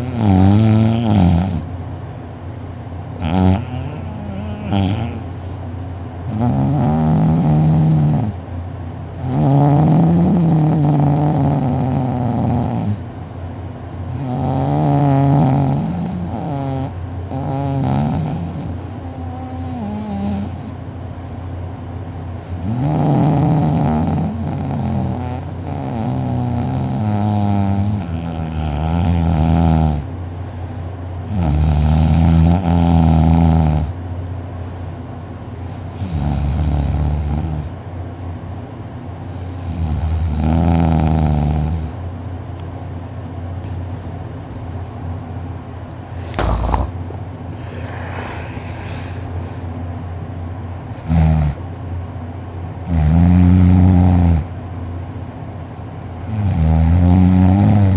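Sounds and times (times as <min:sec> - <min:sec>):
man snoring heavily: 0:00.0 - 0:01.7, 0:03.2 - 0:05.3, 0:06.3 - 0:08.4, 0:09.2 - 0:13.0, 0:14.1 - 0:20.7, 0:22.6 - 0:30.1, 0:31.3 - 0:34.0, 0:36.0 - 0:37.7, 0:39.5 - 0:42.0, 0:46.3 - 0:47.0, 0:47.6 - 0:49.6, 0:51.0 - 0:51.6, 0:52.9 - 0:54.5, 0:56.2 - 0:57.9
soft breathing: 0:46.1 - 0:50.1
sharp knock: 0:46.4 - 0:46.9.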